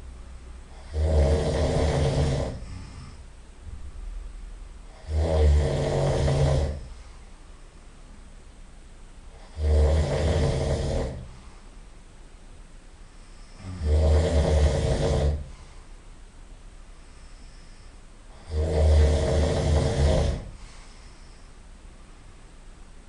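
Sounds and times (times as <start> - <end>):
quiet breathing: 0.0 - 3.4, 4.9 - 8.1, 9.2 - 12.0, 13.0 - 16.2, 16.8 - 22.4
person snoring loudly: 0.7 - 3.2, 4.9 - 7.0, 9.3 - 11.4, 13.4 - 15.6, 18.3 - 20.6.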